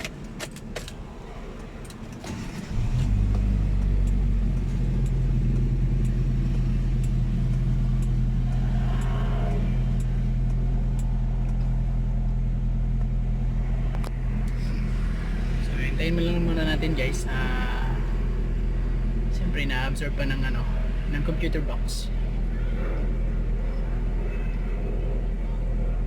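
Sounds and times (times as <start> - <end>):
car engine starting and idling: 0.0 - 26.0.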